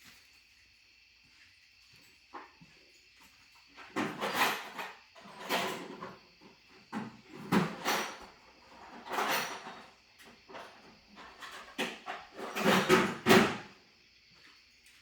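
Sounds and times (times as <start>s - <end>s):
tool drawers sliding and knocking: 7.0s - 9.9s, 11.2s - 13.7s.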